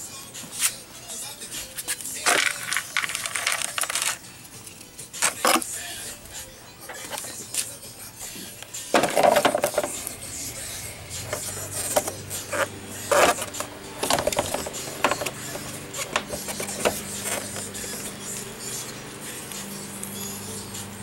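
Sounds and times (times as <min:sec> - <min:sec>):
tools clicking knocking and scraping: 0:01.9 - 0:05.7, 0:08.9 - 0:10.1, 0:11.2 - 0:18.0.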